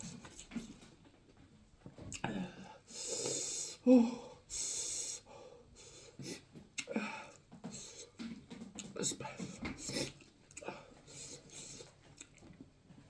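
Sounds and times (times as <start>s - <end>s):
breathy hisses: 4.5s - 6.4s
wet chewing clicks: 9.8s - 12.6s.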